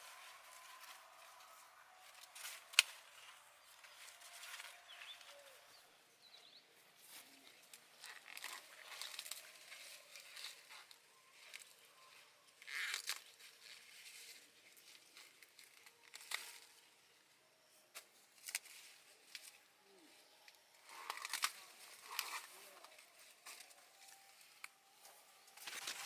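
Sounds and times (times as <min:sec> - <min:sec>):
dry leaves rustling: 0:00.0 - 0:05.6, 0:07.0 - 0:16.9, 0:18.4 - 0:26.0
sharp snaps or tearing: 0:02.2 - 0:03.3, 0:12.6 - 0:13.8, 0:17.9 - 0:19.6, 0:20.8 - 0:23.8.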